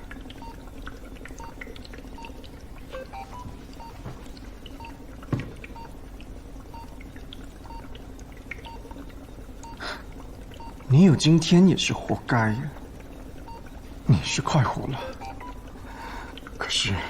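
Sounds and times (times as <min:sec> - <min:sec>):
low steady hum: 0:00.0 - 0:17.0
patient monitor beeping: 0:01.4 - 0:04.2, 0:04.8 - 0:06.0, 0:06.7 - 0:07.0, 0:10.6 - 0:15.8.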